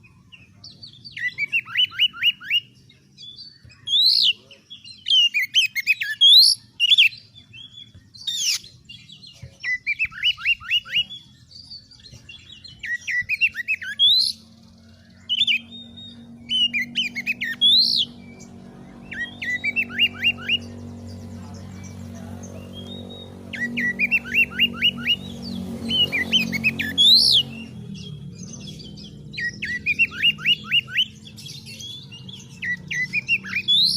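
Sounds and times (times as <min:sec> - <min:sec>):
bird singing: 0:00.0 - 0:33.9
low hum: 0:15.6 - 0:32.8.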